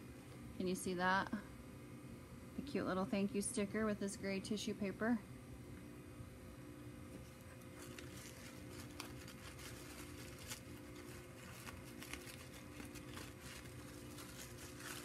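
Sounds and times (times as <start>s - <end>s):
tissue paper rustling: 7.2s - 15.0s.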